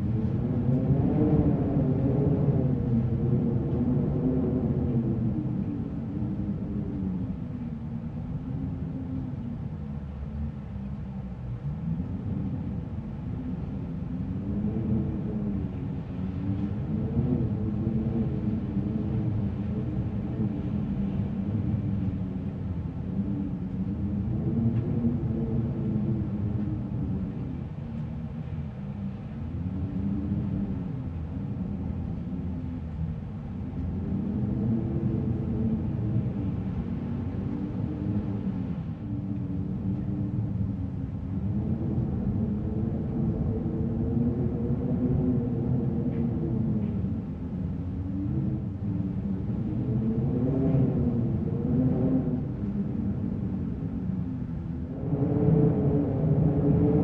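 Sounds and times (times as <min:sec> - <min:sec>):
low rumbling wind: 0:00.0 - 0:57.0
wavering moaning tone: 0:12.0 - 0:57.0.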